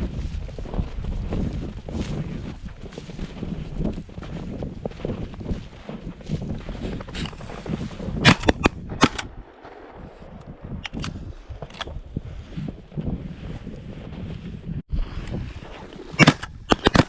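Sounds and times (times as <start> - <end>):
wind buffeting microphone: 0.0 - 17.0
shotgun shots: 8.2 - 10.1, 16.2 - 17.0.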